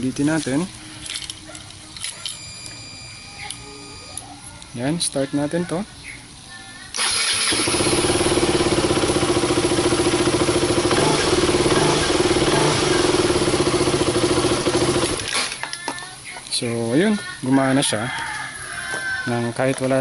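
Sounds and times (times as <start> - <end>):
motorcycle engine starting and running: 7.0 - 15.4.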